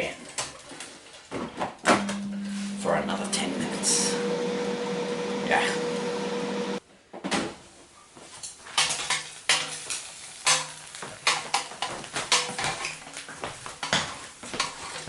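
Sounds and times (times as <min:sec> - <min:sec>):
air fryer hum: 0:01.9 - 0:06.8.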